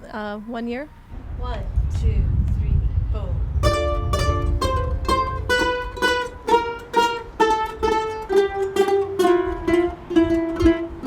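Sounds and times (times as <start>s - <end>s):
ukuleles strumming: 3.6s - 11.0s.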